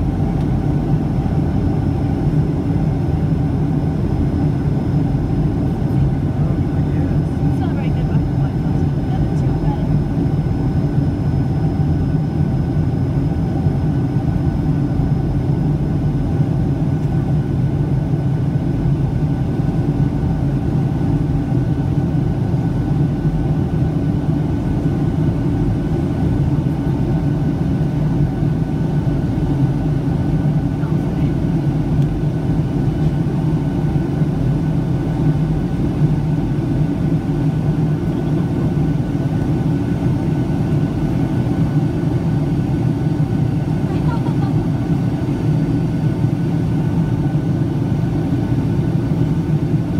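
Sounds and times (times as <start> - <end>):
jet engine cabin roar: 0.0 - 49.9.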